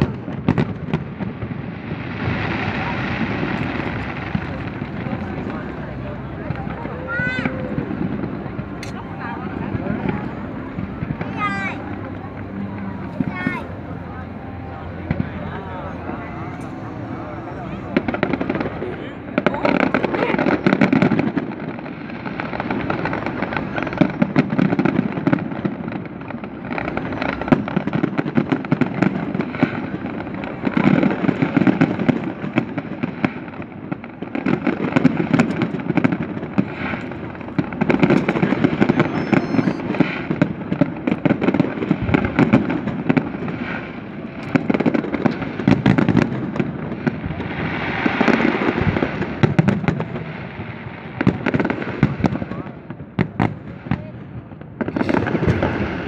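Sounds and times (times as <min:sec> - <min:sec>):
fireworks crackling: 0:00.0 - 0:56.0
fireworks heavy thuds: 0:15.0 - 0:56.0.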